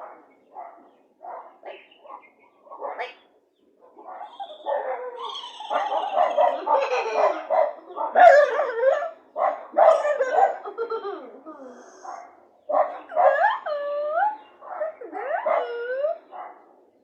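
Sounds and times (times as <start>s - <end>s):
person imitating dog barking: 9.9s - 12.0s.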